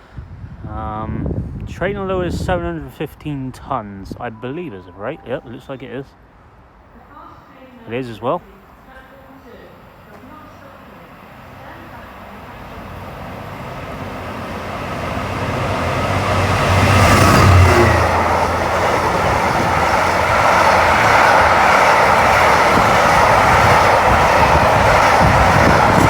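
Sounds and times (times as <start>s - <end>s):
diesel locomotive passing: 2.0s - 26.0s
wagons rolling by: 9.8s - 26.0s.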